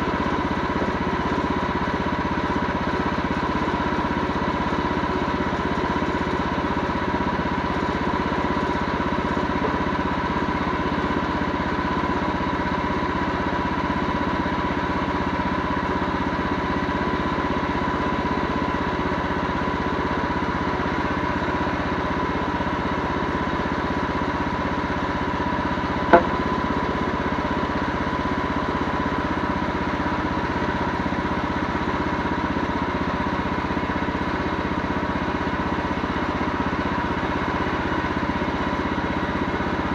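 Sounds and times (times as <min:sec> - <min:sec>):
engine running steadily: 0:00.0 - 0:39.9
sharp click: 0:26.1 - 0:26.5.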